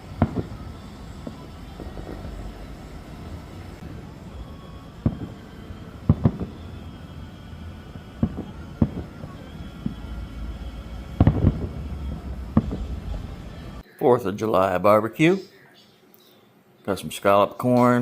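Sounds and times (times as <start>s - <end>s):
fireworks bangs: 0.0s - 13.8s
low steady rumble: 0.0s - 13.8s.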